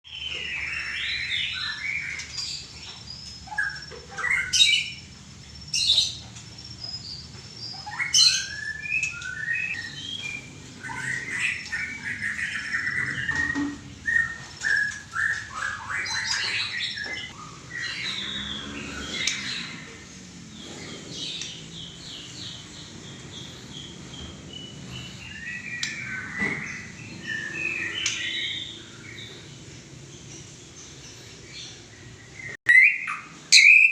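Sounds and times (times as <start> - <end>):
bird singing whistled phrases: 7.7 - 16.7, 32.7 - 33.9.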